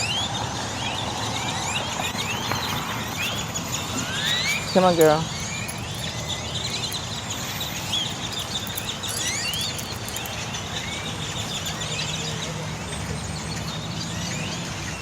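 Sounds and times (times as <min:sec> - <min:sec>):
flock of birds chirping: 0:01.9 - 0:10.4.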